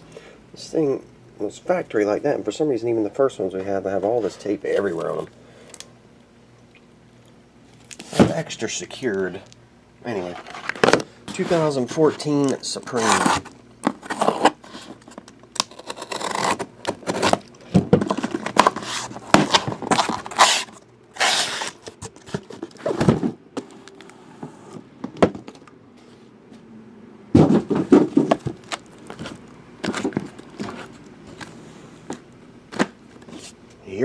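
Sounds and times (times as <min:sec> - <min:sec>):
cardboard and tape scraping and rustling: 0:10.1 - 0:24.1, 0:27.4 - 0:31.6.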